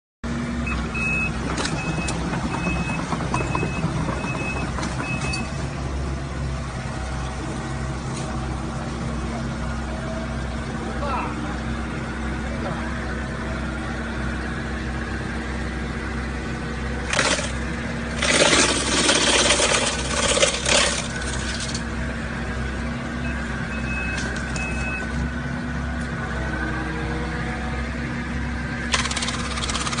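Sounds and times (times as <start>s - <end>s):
excavator engine running: 0.3s - 30.0s
wood being crushed: 17.1s - 21.8s.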